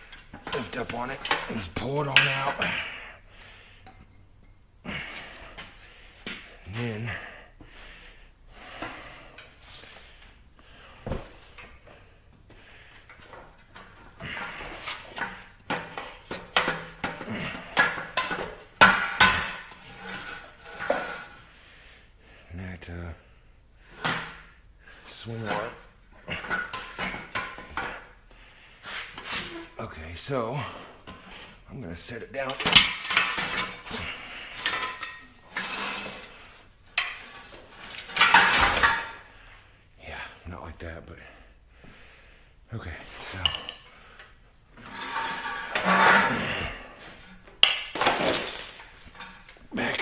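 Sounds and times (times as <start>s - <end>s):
metal parts clattering and scraping: 13.1s - 21.5s, 32.4s - 39.2s, 44.8s - 50.0s.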